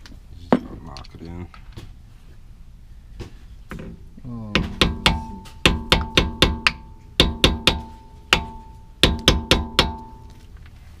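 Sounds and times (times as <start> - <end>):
hammer striking steel: 4.6 - 10.3.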